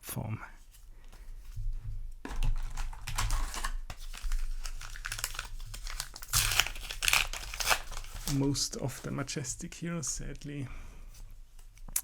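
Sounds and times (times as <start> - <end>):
wrapper and cards crinkling: 2.2 - 10.4.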